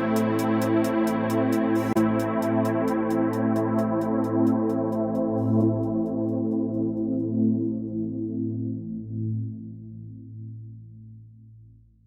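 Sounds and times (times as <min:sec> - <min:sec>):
low synthesizer tones: 0:00.0 - 0:07.5.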